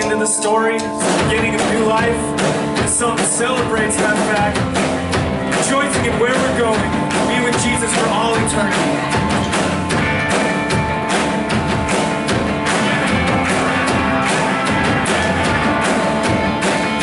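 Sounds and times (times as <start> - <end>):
steady drum beats: 0.0 - 17.0
worship band playing: 0.0 - 17.0.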